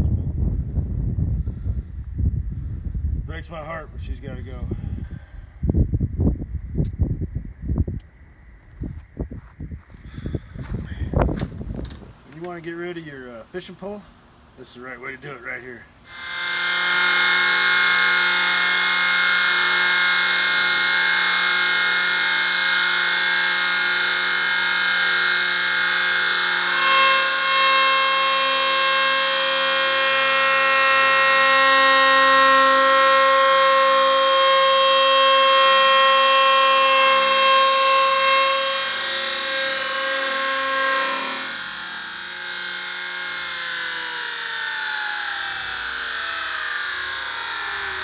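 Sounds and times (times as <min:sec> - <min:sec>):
chainsaw running at high speed: 0:16.1 - 0:48.0.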